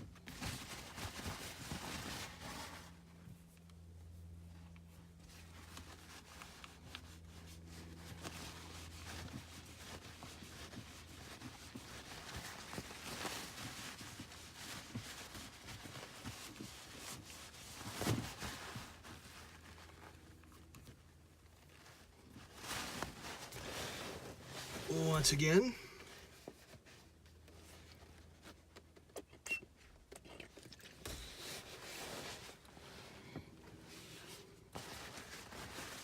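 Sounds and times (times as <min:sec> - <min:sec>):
paper towel scrubbing: 0:05.4 - 0:20.2.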